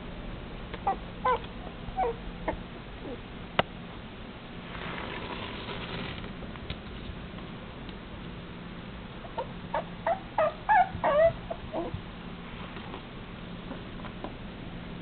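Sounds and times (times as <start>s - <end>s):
puppy whimpering yips: 0.8s - 3.2s, 9.3s - 12.0s
soft rustle: 4.6s - 7.1s.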